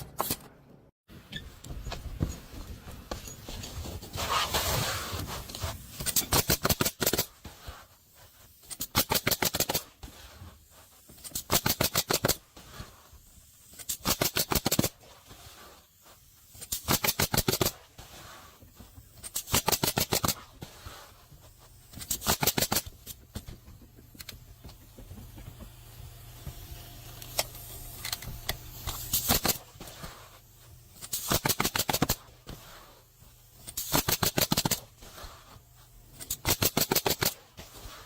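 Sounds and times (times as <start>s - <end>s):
pneumatic nailer firing: 5.9s - 7.5s, 8.6s - 10.2s, 11.2s - 13.0s, 13.6s - 15.2s, 16.5s - 18.1s, 18.9s - 20.6s, 21.9s - 24.6s, 25.7s - 30.2s, 30.9s - 32.6s, 33.6s - 35.2s, 36.2s - 37.9s.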